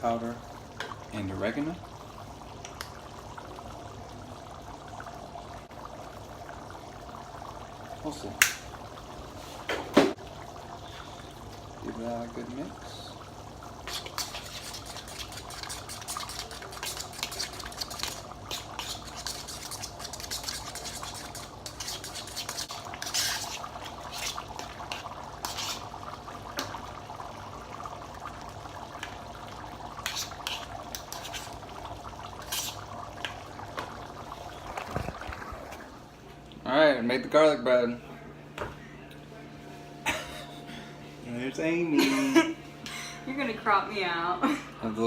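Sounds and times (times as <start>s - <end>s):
steady background hum: 0.0s - 45.0s
utensil scraping in a bowl: 13.8s - 26.0s, 30.0s - 31.6s, 32.4s - 32.9s.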